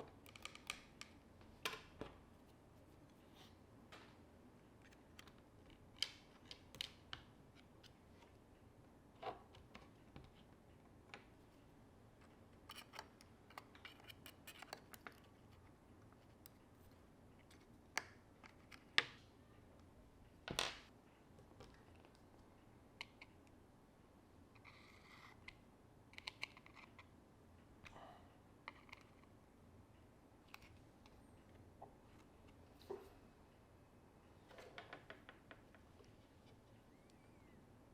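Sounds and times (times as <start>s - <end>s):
small tools clicking and tapping: 12.6s - 16.6s.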